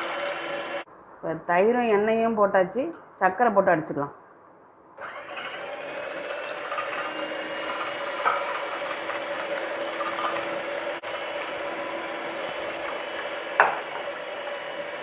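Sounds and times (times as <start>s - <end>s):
electric hand mixer running: 0.0s - 0.9s, 5.0s - 15.0s.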